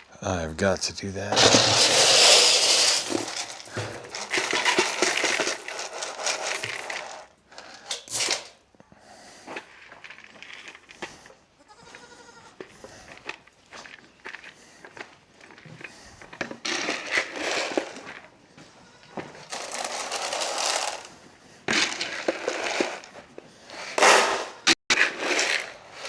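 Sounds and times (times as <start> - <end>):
goats rustling and clattering: 1.3 - 8.6, 9.3 - 23.9
goat bleat: 11.6 - 12.6.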